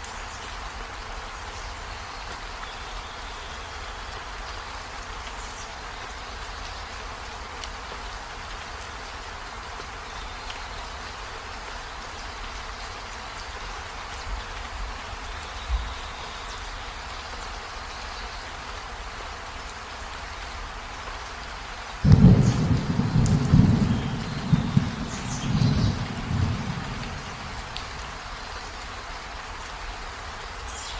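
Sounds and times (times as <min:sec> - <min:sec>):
steady rain falling: 0:00.0 - 0:30.9
thunder rumbling: 0:22.0 - 0:28.2.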